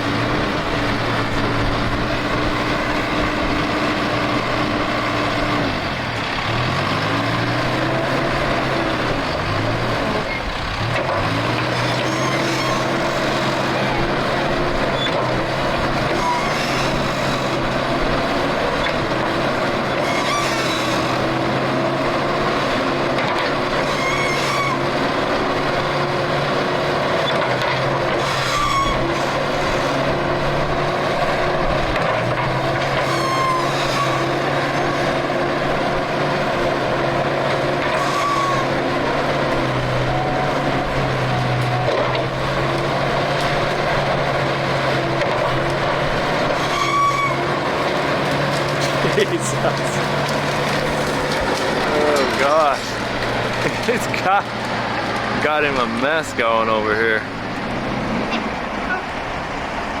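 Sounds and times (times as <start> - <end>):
heavy machinery engine running: 0.0 - 60.0
short high squeaks: 11.8 - 13.3, 16.1 - 17.6, 20.0 - 21.2, 23.8 - 24.8, 28.2 - 30.0, 33.0 - 34.4, 37.9 - 38.8, 46.5 - 47.5.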